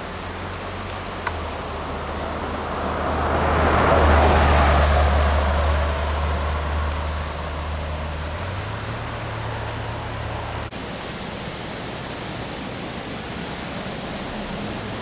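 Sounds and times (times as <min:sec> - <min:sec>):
vehicle passing by: 0:00.0 - 0:10.7.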